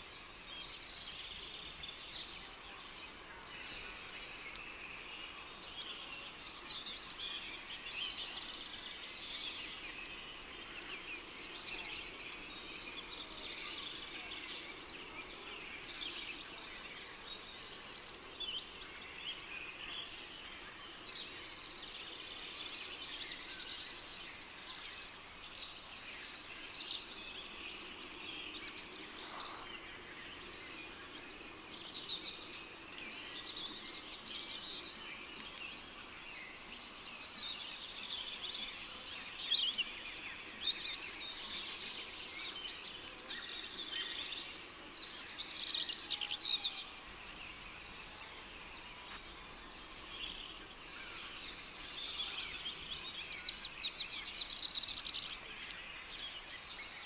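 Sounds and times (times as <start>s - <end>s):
cricket chirping: 25.2s - 46.2s, 46.8s - 57.0s.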